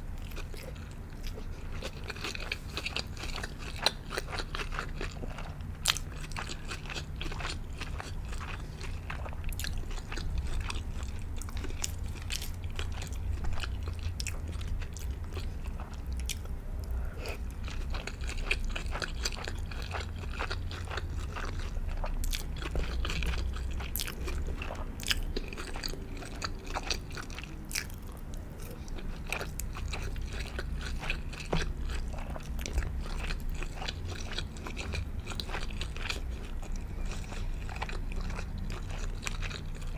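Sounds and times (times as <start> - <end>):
chewing and biting food: 0.1 - 39.9.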